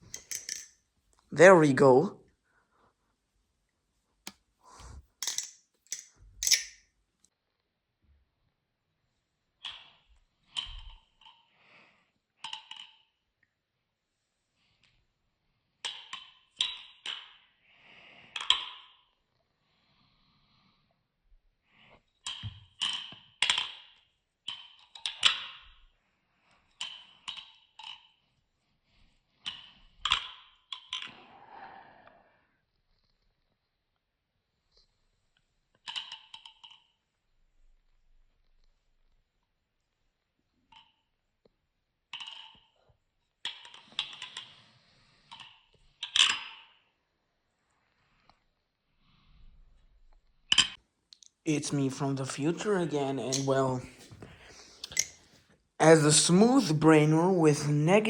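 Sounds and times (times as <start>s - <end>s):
butterfly knife clacking: 0.2s - 0.7s, 5.2s - 6.8s.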